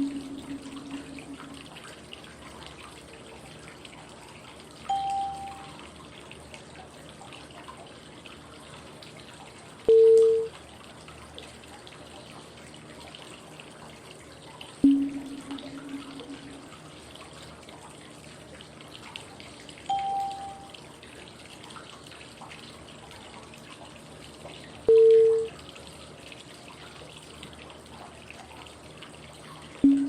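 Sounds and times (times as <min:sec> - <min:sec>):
short electronic cue tones: 0:00.0 - 0:01.6, 0:04.9 - 0:05.8, 0:09.9 - 0:10.5, 0:14.8 - 0:16.8, 0:19.9 - 0:20.7, 0:24.9 - 0:25.5
flowing water: 0:00.0 - 0:30.0.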